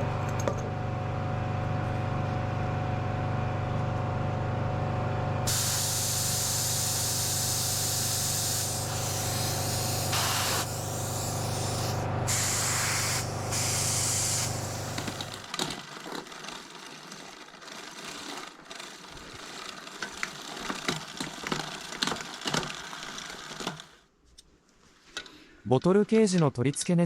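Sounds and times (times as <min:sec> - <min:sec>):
steady low hum: 0:00.0 - 0:15.4
hissing in bursts: 0:05.5 - 0:15.4.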